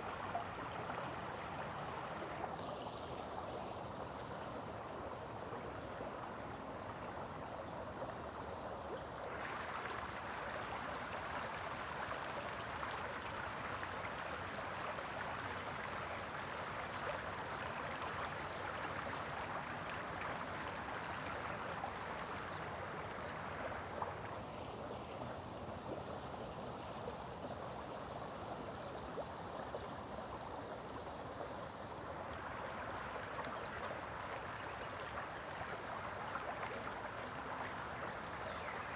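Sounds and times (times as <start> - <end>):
stream water rushing: 31.9 - 38.9.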